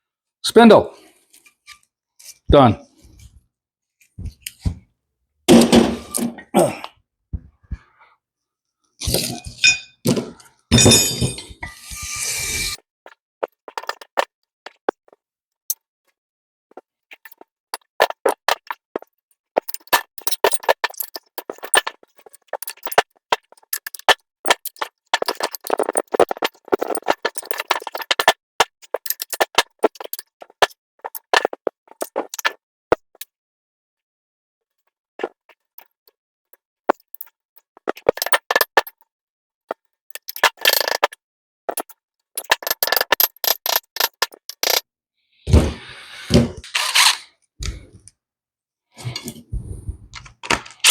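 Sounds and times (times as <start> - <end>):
metal scraping and rattling: 23.6 - 28.3.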